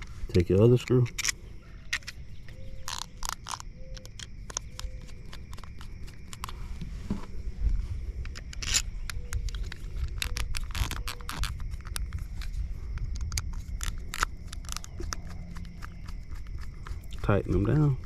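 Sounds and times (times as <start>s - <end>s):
clicks and scrapes of plastic parts: 8.2s - 15.4s.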